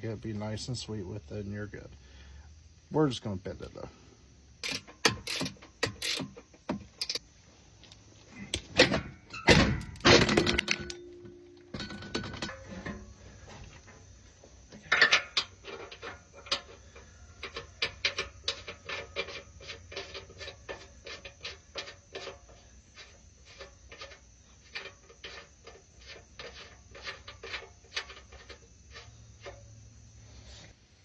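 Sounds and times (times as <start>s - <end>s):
ratchet wrench clicking: 4.6s - 7.2s
metal clatter: 8.4s - 29.8s.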